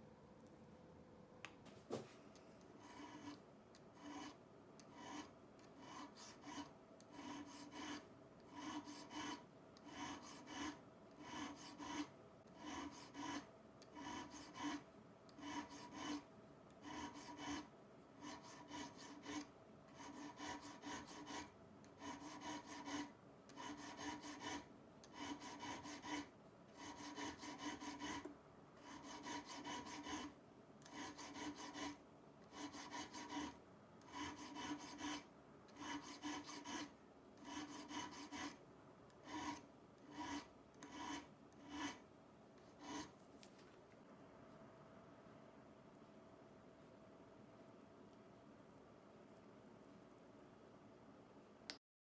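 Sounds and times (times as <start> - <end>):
metal edge iron rasped by hand: 2.8 - 3.4, 4.0 - 14.8, 15.4 - 16.2, 16.8 - 19.4, 25.2 - 30.3, 30.9 - 35.2, 35.8 - 38.6, 39.2 - 42.0, 42.8 - 43.1.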